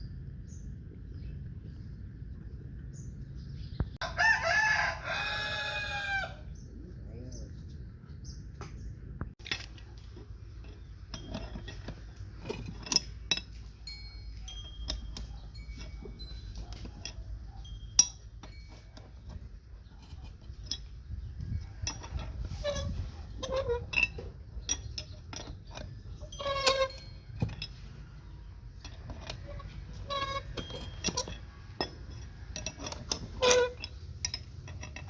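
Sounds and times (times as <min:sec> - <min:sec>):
rooster crowing: 0:04.0 - 0:06.5.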